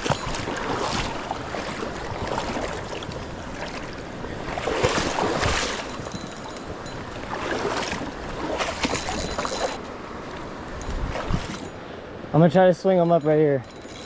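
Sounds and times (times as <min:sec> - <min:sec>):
river water splashing and rushing: 0:00.0 - 0:14.0.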